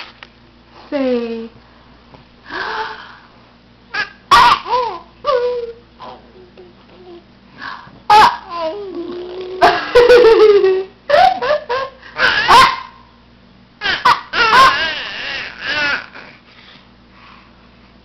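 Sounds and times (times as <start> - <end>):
baby laughing: 3.9 - 6.2, 8.1 - 12.7, 13.8 - 16.3
baby squealing and babbling: 13.8 - 16.4.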